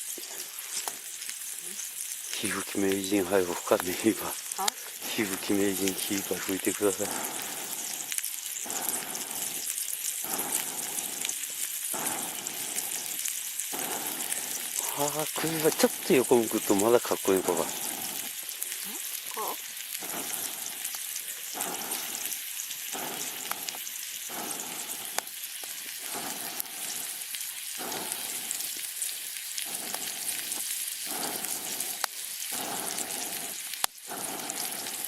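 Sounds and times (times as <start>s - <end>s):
campfire crackling and popping: 0.0s - 35.0s.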